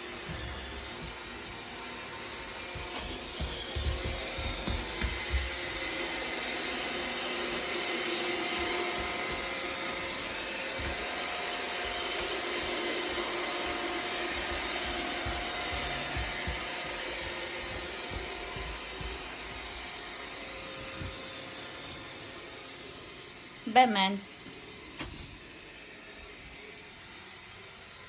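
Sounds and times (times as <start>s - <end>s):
robot vacuum running: 0.0s - 28.0s
low thumps: 14.4s - 19.8s.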